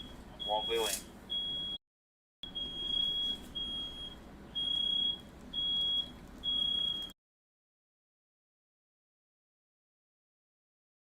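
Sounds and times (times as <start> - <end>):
smoke alarm beeping: 0.0 - 1.8, 2.4 - 7.1.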